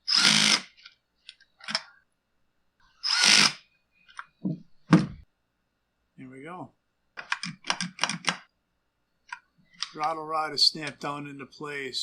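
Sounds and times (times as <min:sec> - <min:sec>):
cordless power driver bursts: 0:00.1 - 0:00.7, 0:03.0 - 0:03.6.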